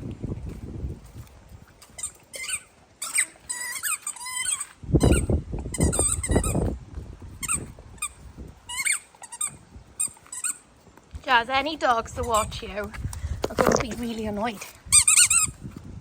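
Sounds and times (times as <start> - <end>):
squeaky dog toy squeaking: 1.9 - 6.6, 7.4 - 10.6, 14.9 - 15.6.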